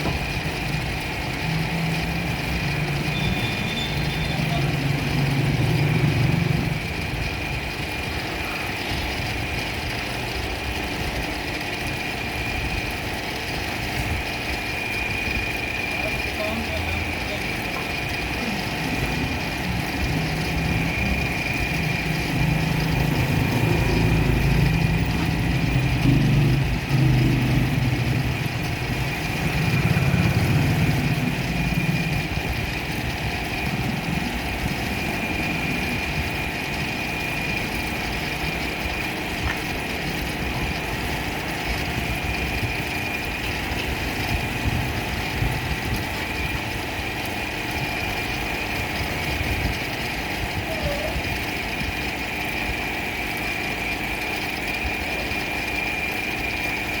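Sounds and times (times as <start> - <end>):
electric motor humming: 0.0 - 56.9
high whine: 14.1 - 46.8.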